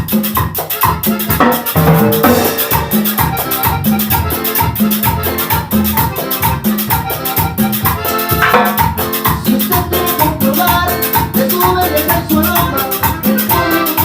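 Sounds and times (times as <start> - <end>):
drums: 0.0 - 14.0
pitched instruments: 0.6 - 14.0
bass line: 1.0 - 14.0.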